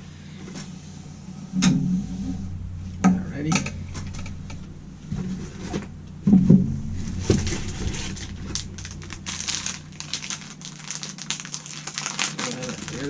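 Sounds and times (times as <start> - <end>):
packaging crinkling: 7.3 - 13.0.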